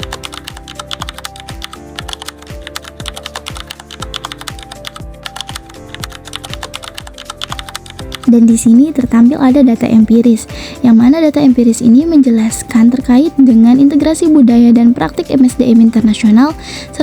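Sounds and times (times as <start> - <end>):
keyboard typing clicks: 0.0 - 8.3
background music with deep beat: 0.0 - 17.0.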